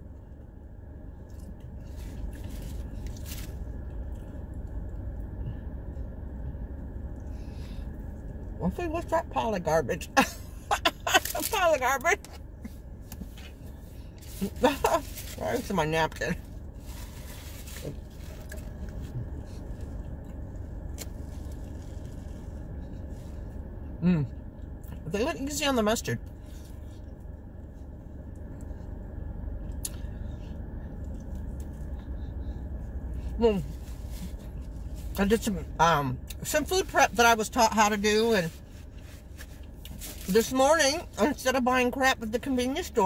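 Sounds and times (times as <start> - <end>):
air conditioning hum: 0.0 - 43.0
chewing a sandwich: 16.8 - 23.6, 30.9 - 32.4.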